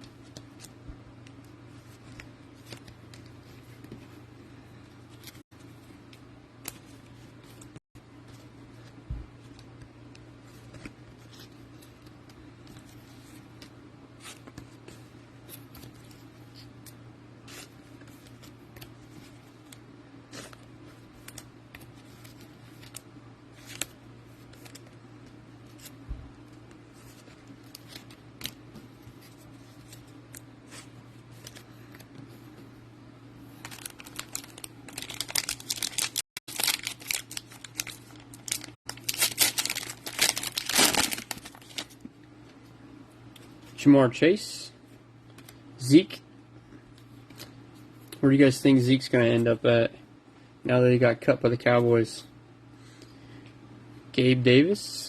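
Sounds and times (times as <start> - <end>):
steady low hum: 0.0 - 55.0
card pack wrapper tearing: 33.6 - 41.9
cards clicking and rustling: 33.6 - 42.0.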